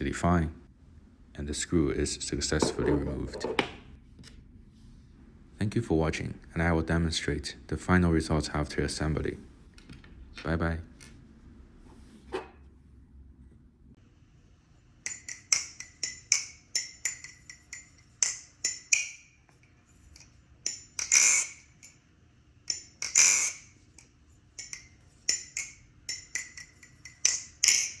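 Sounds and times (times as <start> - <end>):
metallic clatters: 22.7 - 28.0.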